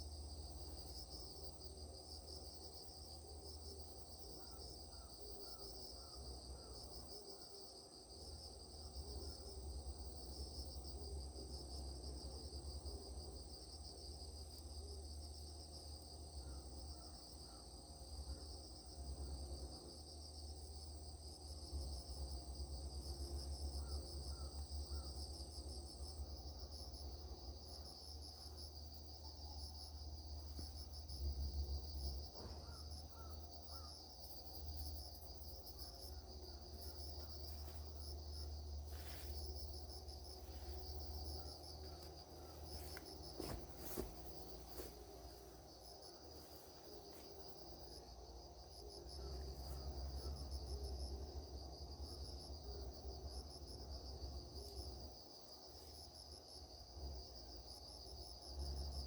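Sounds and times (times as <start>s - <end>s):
high insect whine: 0.0s - 59.0s
insects chirring: 0.0s - 59.0s.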